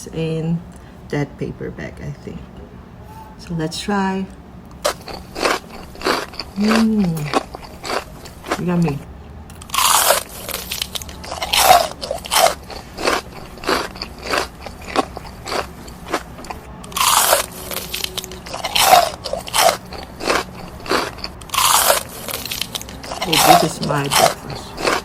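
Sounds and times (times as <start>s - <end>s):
person chewing crunchy food: 4.7s - 25.0s.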